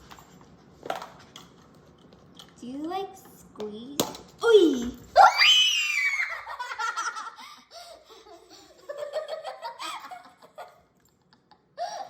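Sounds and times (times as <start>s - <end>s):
child screaming: 5.2s - 6.5s
children laughing: 5.9s - 12.0s.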